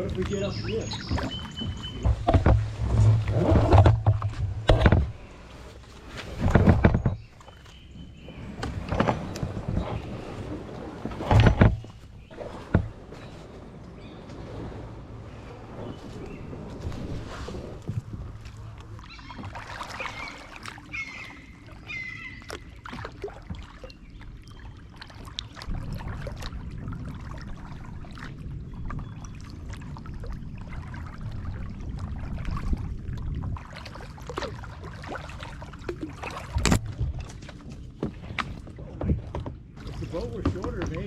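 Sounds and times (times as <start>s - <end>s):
water sounds: 0.0s - 41.0s
knocks against canoe hull: 1.0s - 5.3s.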